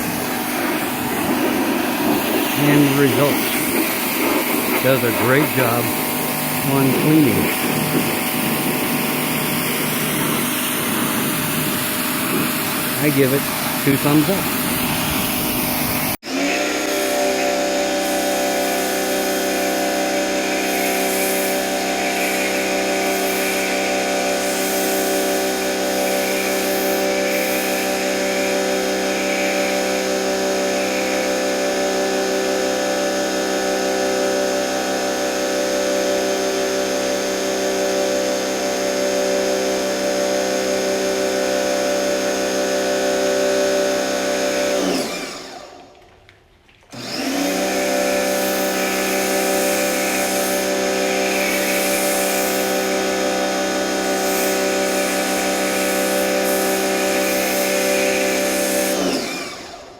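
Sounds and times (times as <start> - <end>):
pressure washer motor whining: 0.0 - 46.0, 46.9 - 59.9
hiss of water spray: 18.0 - 28.5, 48.2 - 59.2.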